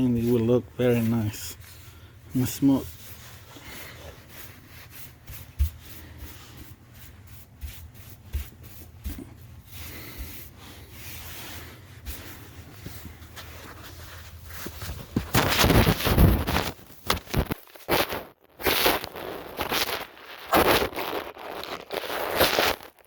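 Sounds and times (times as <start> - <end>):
brush sweeping drywall: 0.0 - 16.7.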